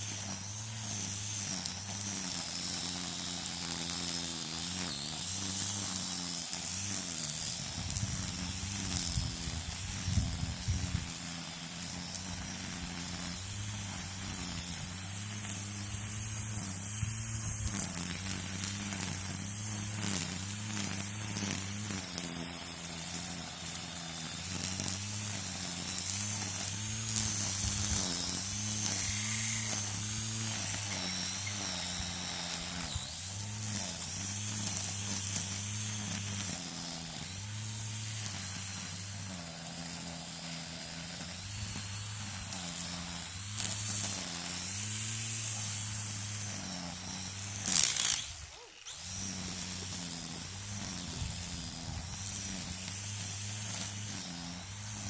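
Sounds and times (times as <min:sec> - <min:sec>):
hiss of spinning line: 0:00.0 - 0:55.0
string trimmer motor: 0:00.0 - 0:55.0.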